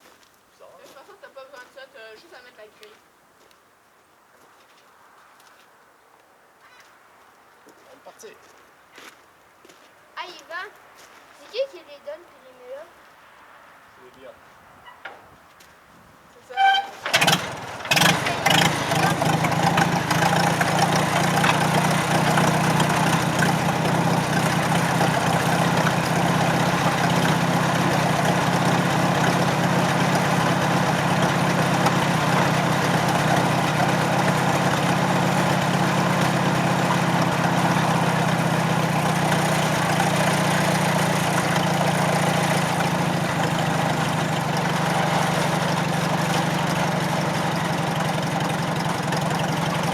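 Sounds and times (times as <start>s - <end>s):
tractor engine starting: 16.5s - 49.9s.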